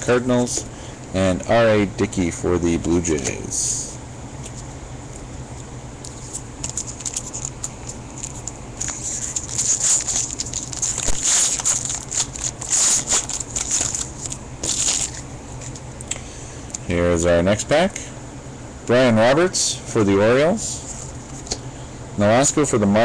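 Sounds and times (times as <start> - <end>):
foil wrapper crinkling: 6.1 - 15.8.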